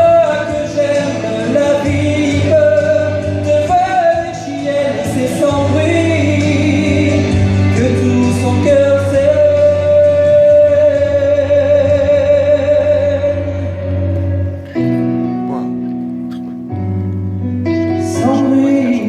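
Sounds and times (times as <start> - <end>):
man singing: 0.0 - 16.9, 17.7 - 19.0
instrumental accompaniment: 0.0 - 19.0.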